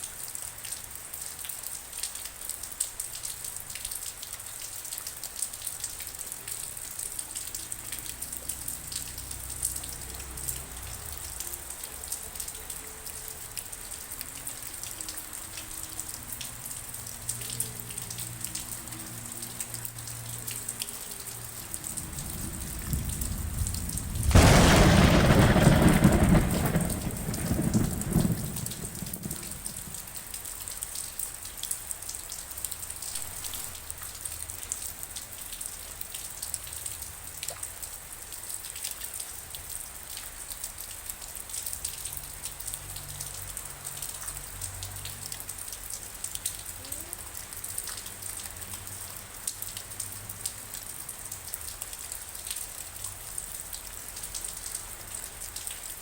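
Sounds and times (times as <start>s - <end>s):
raindrops ticking on hard surface: 0.0s - 56.0s
steady rain: 0.0s - 56.0s
low rumble of thunder: 21.4s - 30.2s.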